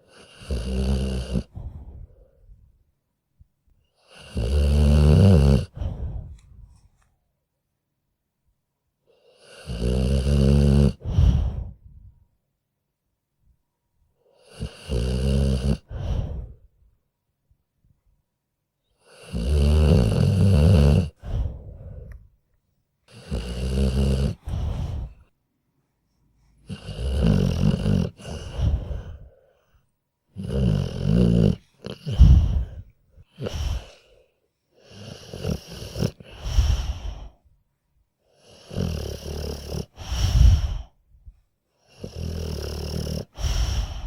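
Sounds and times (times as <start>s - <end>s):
dog snoring: 0.0s - 2.0s, 4.0s - 6.4s, 9.1s - 11.8s, 14.3s - 16.6s, 19.0s - 22.2s, 23.1s - 25.3s, 26.4s - 29.6s, 30.3s - 37.4s, 38.3s - 41.0s, 41.8s - 44.0s.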